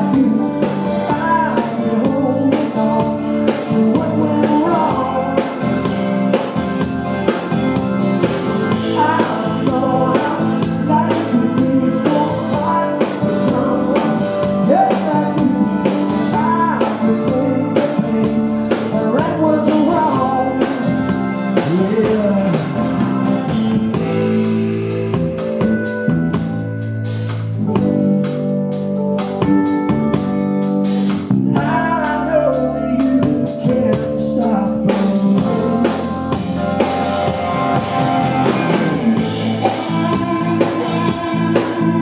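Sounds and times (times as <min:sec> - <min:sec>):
person singing: 0:00.0 - 0:07.4, 0:08.4 - 0:24.7, 0:31.4 - 0:36.6, 0:37.8 - 0:42.0
bass guitar: 0:00.0 - 0:42.0
drums: 0:00.0 - 0:42.0
electric guitar: 0:00.0 - 0:42.0.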